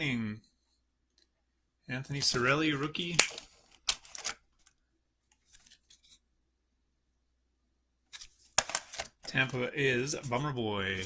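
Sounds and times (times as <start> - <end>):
trading cards rustling: 2.2 - 6.2, 8.1 - 11.0.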